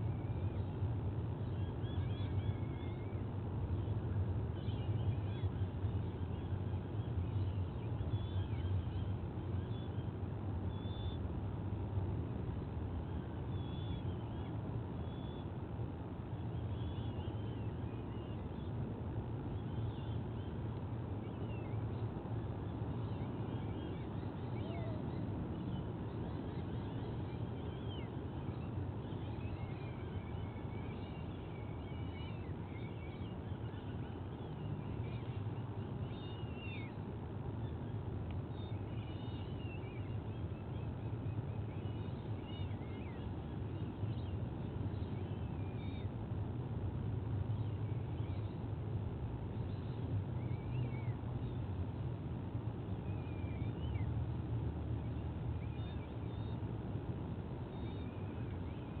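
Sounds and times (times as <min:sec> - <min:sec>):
bird chirps and whistles: 0:23.8 - 0:25.7.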